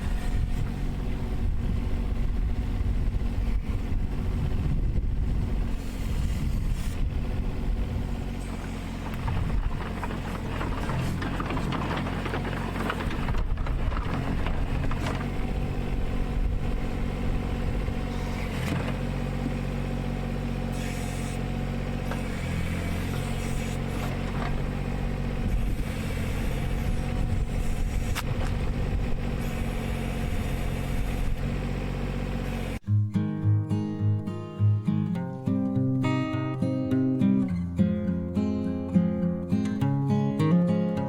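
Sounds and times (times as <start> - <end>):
mini excavator diesel engine: 0.0 - 32.8
acoustic guitar music: 32.8 - 41.0.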